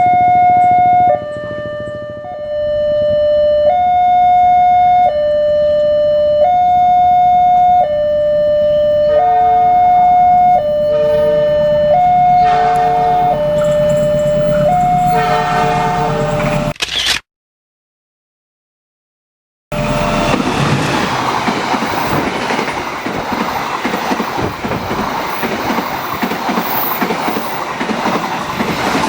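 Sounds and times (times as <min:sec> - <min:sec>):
approaching train: 0:00.0 - 0:16.7, 0:19.7 - 0:29.0
level crossing two-tone siren: 0:00.0 - 0:16.7.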